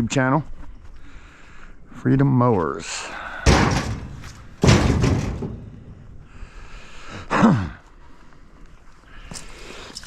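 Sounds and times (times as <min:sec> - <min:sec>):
scrap metal crashing onto trailer: 0:03.4 - 0:06.0.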